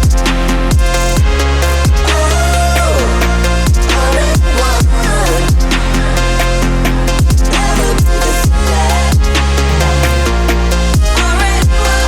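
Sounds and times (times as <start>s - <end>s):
electronic music with heavy bass: 0.0s - 12.0s
gliding synth line: 9.2s - 11.2s.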